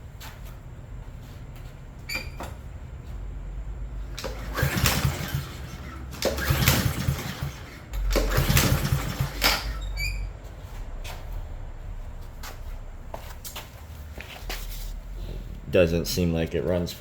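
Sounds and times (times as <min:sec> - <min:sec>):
recoil starter pulled: 0:04.1 - 0:10.0
mower engine cranking: 0:04.1 - 0:10.2.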